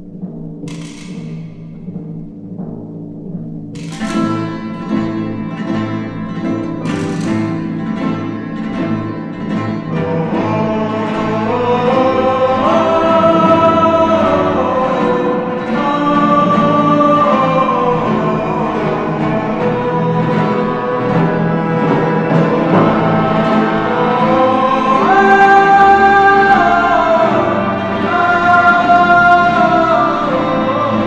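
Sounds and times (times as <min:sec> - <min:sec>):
strummed guitar: 0:00.0 - 0:31.0
voices singing long notes: 0:06.6 - 0:31.0.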